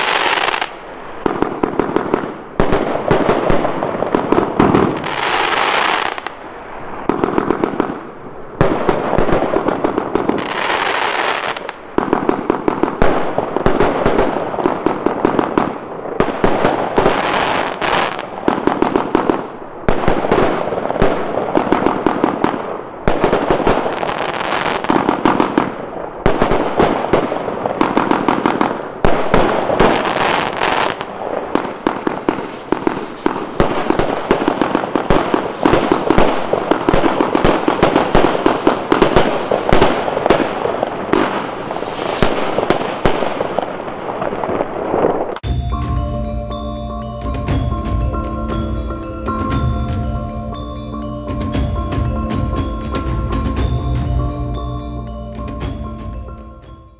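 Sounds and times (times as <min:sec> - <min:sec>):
firework barrage of shots: 0:00.0 - 0:45.6
firework hissing: 0:41.3 - 0:43.2.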